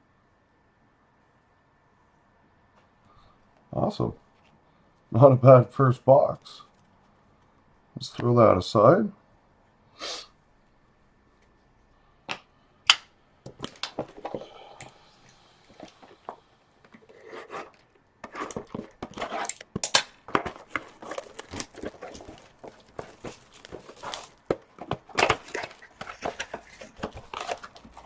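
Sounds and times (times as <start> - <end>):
wrappers rustling: 18.4 - 28.0.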